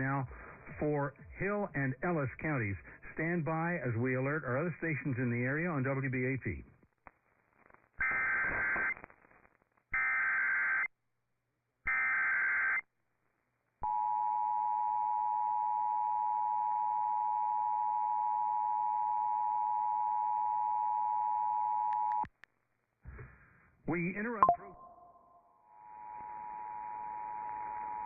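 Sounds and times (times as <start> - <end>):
two-tone attention signal: 24.4 - 25.3.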